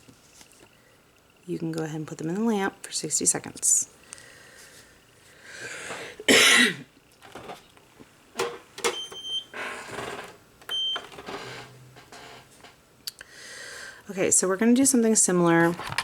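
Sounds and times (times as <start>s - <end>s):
person coughing: 6.2s - 6.9s.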